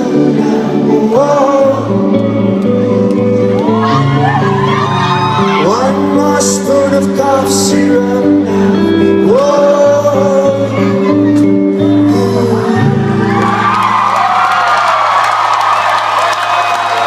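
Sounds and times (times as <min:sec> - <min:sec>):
electric guitar and bass: 0:00.0 - 0:17.0.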